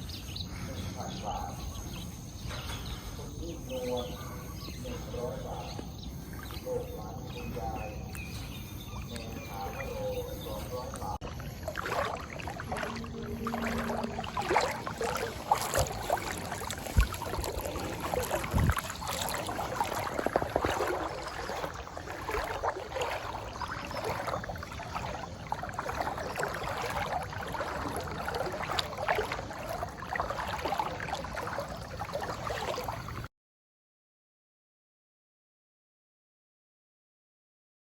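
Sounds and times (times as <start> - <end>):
floodwater splashing: 3.8 - 33.3.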